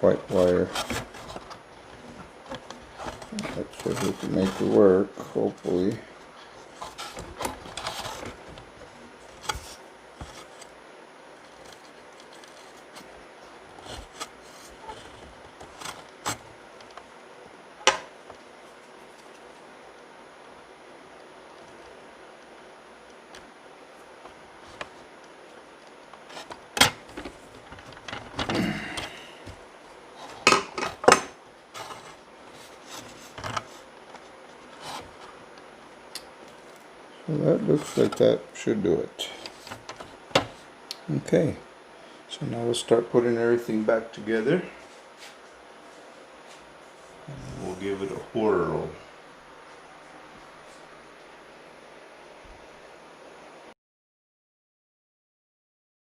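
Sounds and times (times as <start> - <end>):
tool clicks and knocks: 17.8 - 18.1.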